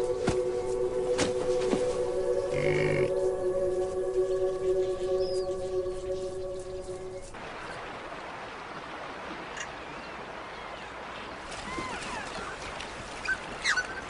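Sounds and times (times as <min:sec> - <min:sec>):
flowing water: 0:04.4 - 0:14.0.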